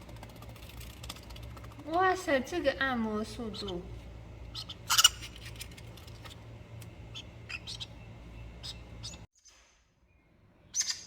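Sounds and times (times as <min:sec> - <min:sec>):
low steady hum: 0:00.0 - 0:09.3
pet birds chirping and clicking: 0:04.5 - 0:09.6, 0:10.7 - 0:11.0.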